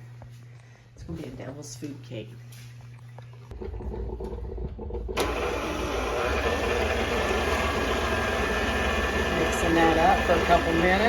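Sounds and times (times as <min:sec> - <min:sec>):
electric mixer motor humming: 0:04.7 - 0:11.0.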